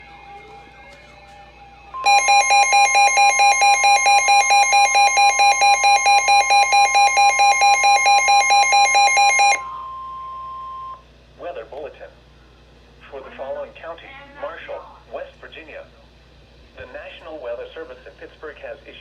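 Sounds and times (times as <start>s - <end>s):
steady warning tone: 2.0s - 11.0s.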